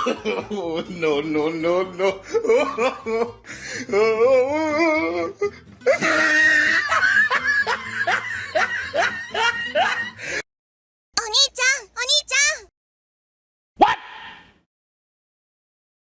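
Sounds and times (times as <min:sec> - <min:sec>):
music: 0:00.0 - 0:10.4
person laughing: 0:05.9 - 0:10.4.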